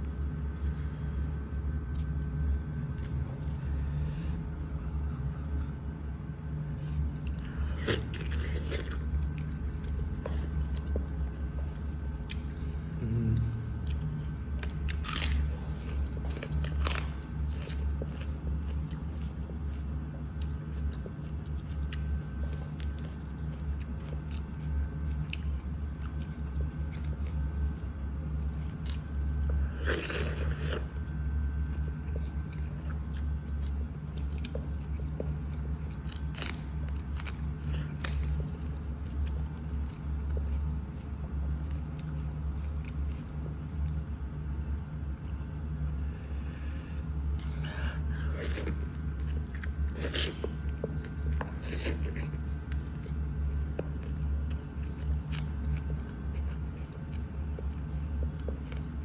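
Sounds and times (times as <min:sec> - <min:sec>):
steady low hum: 0:00.0 - 0:59.0
person crunching and chewing: 0:06.8 - 0:44.0, 0:46.4 - 0:59.0.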